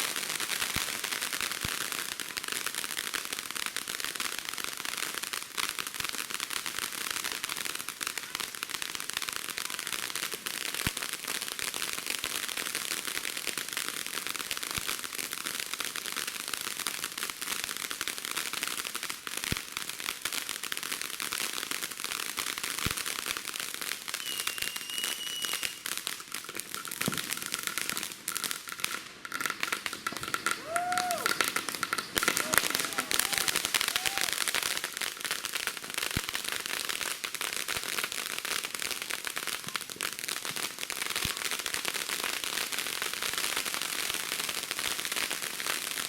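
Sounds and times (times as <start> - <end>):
fireworks crackling: 0.0 - 46.0
sharp firework pops: 22.2 - 37.8.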